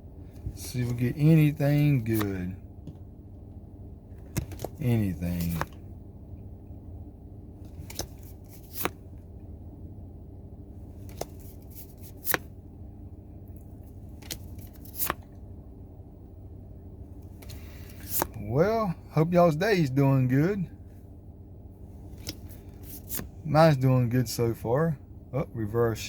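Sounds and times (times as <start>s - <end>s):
steady low hum: 0.0s - 26.0s
trading cards flicking: 7.7s - 9.0s, 11.0s - 12.5s, 14.1s - 15.2s, 22.1s - 23.3s.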